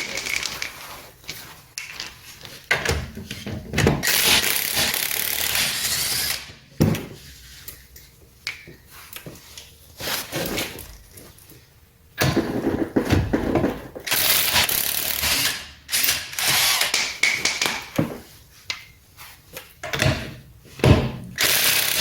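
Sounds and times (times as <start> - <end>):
knocks of tools and parts: 2.7 - 4.1, 6.8 - 7.2, 16.9 - 18.8, 19.8 - 21.4
impact wrench hammering: 4.0 - 6.6, 14.1 - 18.0.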